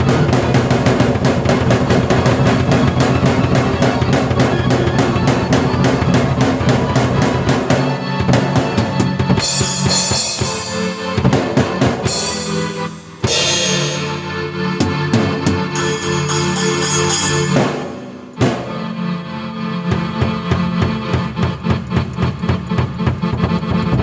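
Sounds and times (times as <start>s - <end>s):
drum beat: 0.0s - 18.8s, 20.0s - 24.0s
sustained keyboard notes: 0.0s - 24.0s
cymbal crashes: 9.4s - 11.2s, 12.0s - 18.7s.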